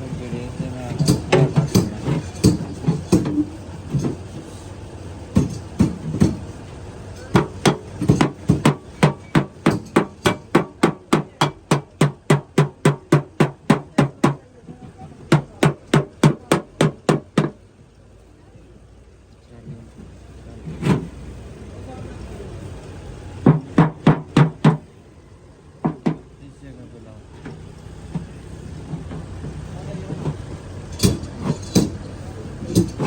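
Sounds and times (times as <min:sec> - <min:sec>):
hammer on sheet metal: 0:01.0 - 0:04.2, 0:07.2 - 0:14.4, 0:15.3 - 0:17.6, 0:31.0 - 0:32.0.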